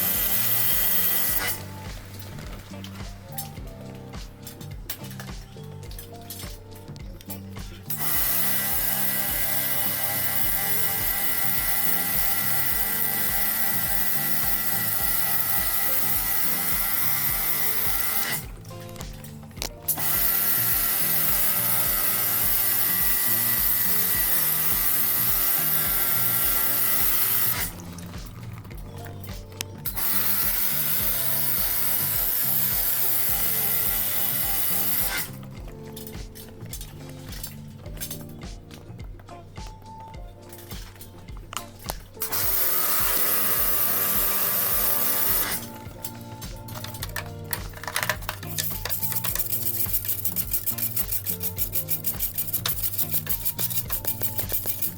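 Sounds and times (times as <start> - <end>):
pressure washer whining and hissing: 0.0 - 3.4, 7.8 - 19.2, 19.9 - 28.4, 29.8 - 35.4, 42.2 - 54.9.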